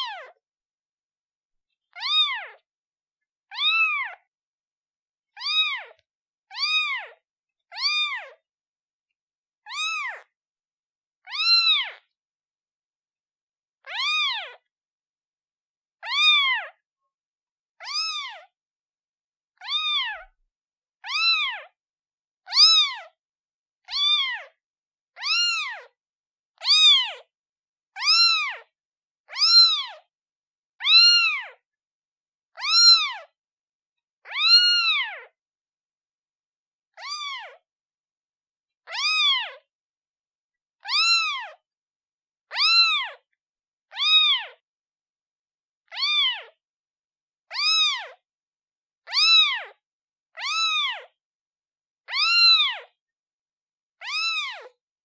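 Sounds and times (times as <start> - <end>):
kitten meowing: 0.0 - 0.4, 1.9 - 2.6, 3.5 - 4.3, 5.4 - 8.4, 9.7 - 10.3, 11.3 - 12.1, 13.8 - 14.7, 16.0 - 16.8, 17.8 - 18.5, 19.6 - 20.4, 21.0 - 21.8, 22.5 - 23.2, 23.9 - 24.6, 25.2 - 26.0, 26.6 - 27.3, 28.0 - 28.7, 29.3 - 30.1, 30.8 - 31.6, 32.5 - 33.4, 34.2 - 35.4, 37.0 - 37.6, 38.8 - 39.6, 40.8 - 41.6, 42.5 - 43.2, 43.9 - 44.6, 45.9 - 46.6, 47.5 - 48.2, 49.0 - 49.8, 50.4 - 51.2, 52.0 - 53.0, 54.0 - 54.8.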